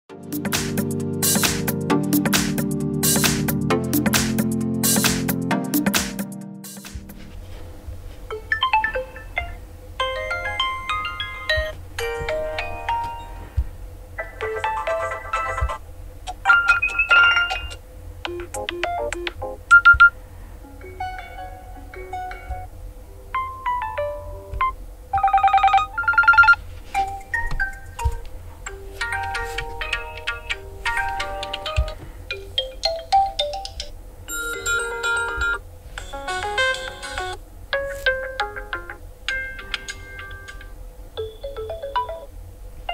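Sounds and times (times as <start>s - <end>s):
phone ringtone melodies: 8.3s - 13.5s, 14.4s - 15.8s, 16.5s - 20.1s, 23.3s - 40.6s, 41.2s - 42.3s.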